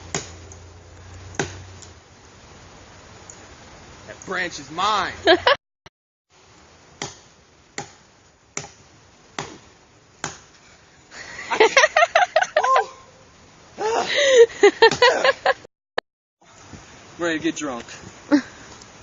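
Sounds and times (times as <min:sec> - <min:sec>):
wood knocks while splitting firewood: 0:00.1 - 0:00.4, 0:01.4 - 0:01.6, 0:10.2 - 0:10.5
person laughing and squealing: 0:11.2 - 0:13.2, 0:13.8 - 0:15.7.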